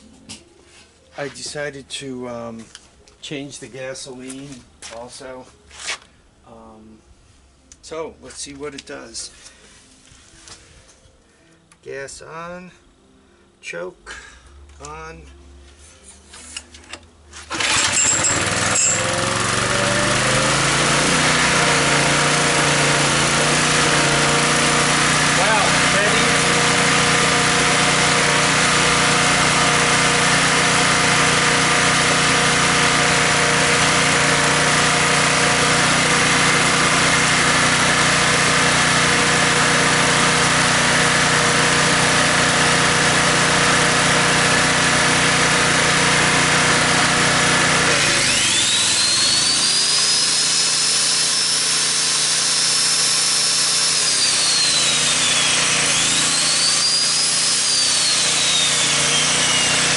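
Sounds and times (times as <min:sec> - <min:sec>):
high engine whine: 0:16.9 - 0:52.0
portable generator running: 0:17.4 - 0:59.9.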